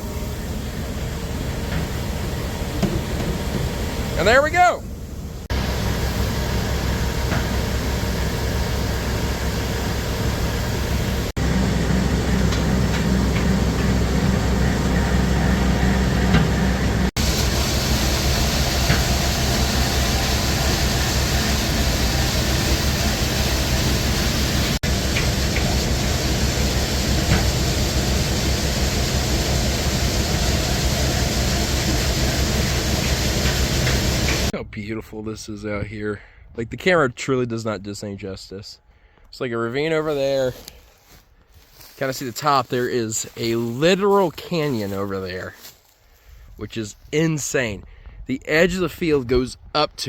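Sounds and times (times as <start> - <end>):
diesel engine running: 0.0 - 34.6.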